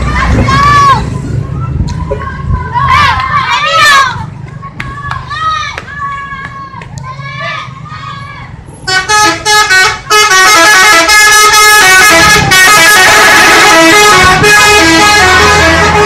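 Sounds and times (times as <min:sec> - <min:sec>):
musical bus horn: 0:08.8 - 0:16.0.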